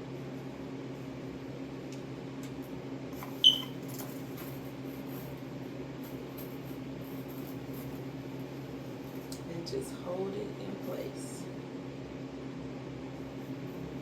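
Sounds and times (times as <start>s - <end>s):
steady low hum: 0.0s - 14.0s
short sharp high squeak: 3.4s - 3.8s.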